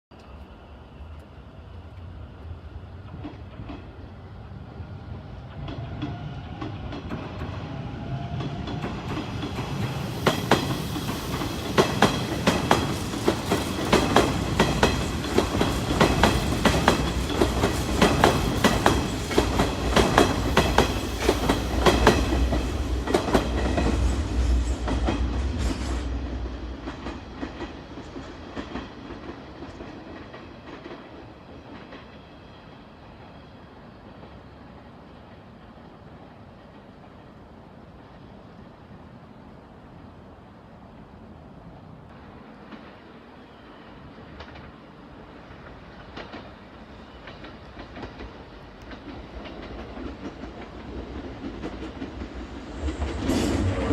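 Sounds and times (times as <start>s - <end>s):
electric train passing: 0.1s - 53.9s
train wheels clicking over rail joints: 3.0s - 4.1s, 5.4s - 32.3s, 44.2s - 53.9s.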